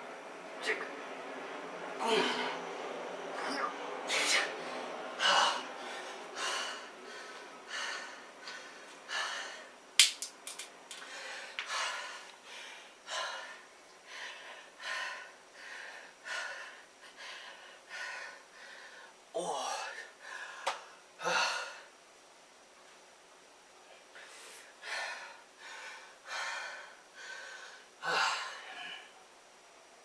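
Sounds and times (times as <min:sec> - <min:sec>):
man breathing hard: 0:02.0 - 0:02.6, 0:04.1 - 0:09.8, 0:10.9 - 0:21.9, 0:24.2 - 0:29.2
sharp click: 0:10.0 - 0:10.7.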